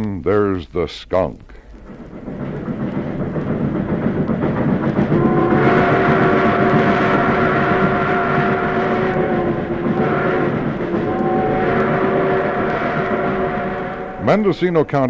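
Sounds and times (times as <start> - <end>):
train rumble: 0.0 - 15.0
long train whistle: 5.1 - 15.0.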